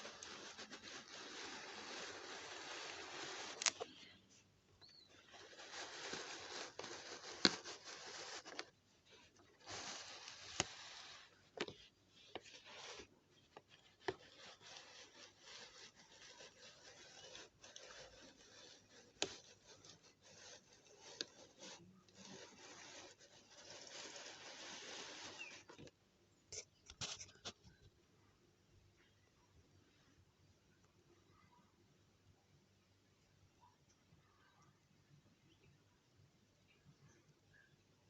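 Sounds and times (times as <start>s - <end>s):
rubbing and scraping on hard surface: 0.0s - 25.9s, 26.5s - 27.9s.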